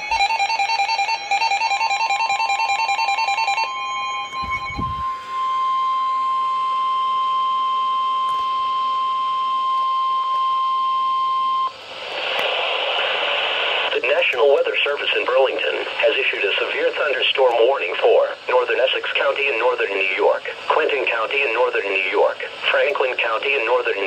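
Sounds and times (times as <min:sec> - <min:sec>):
rapid electronic alert beeping: 0:00.0 - 0:05.4
steady high-pitched warning tone: 0:01.0 - 0:11.8
radio static: 0:11.7 - 0:24.0.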